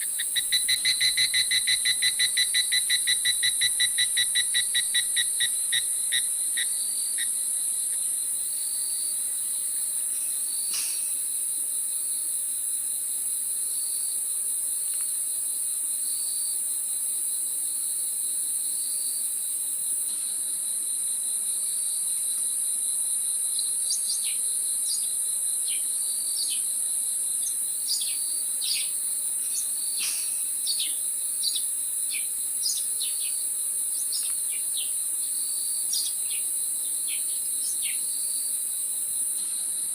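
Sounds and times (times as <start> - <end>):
rapid pulsed chirping: 0.0 - 7.3
high-pitched insect chorus: 0.0 - 39.9.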